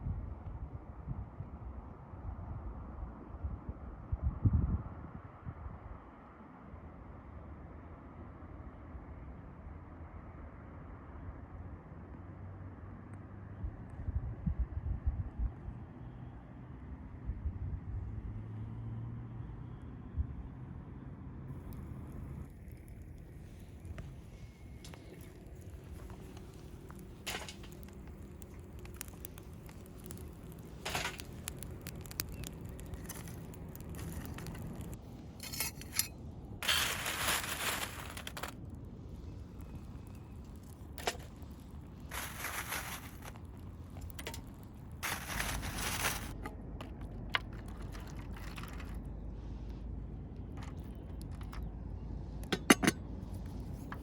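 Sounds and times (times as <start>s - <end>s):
crunching handling noises: 21.5s - 49.3s.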